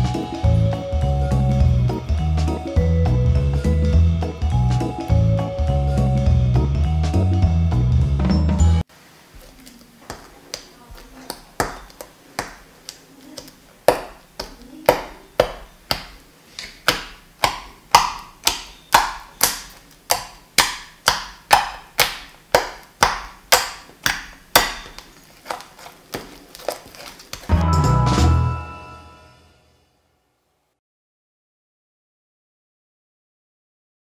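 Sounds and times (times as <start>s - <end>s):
slime popping and slapping: 9.4s - 27.6s.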